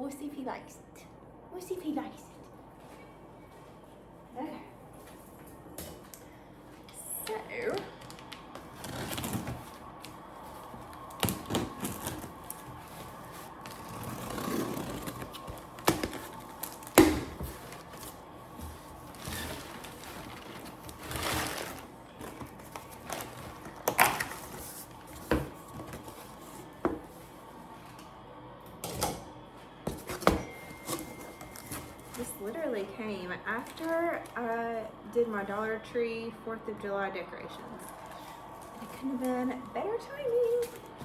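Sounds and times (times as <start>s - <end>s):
cardboard and packing rustling: 7.2s - 28.0s, 29.8s - 32.8s, 40.2s - 41.0s.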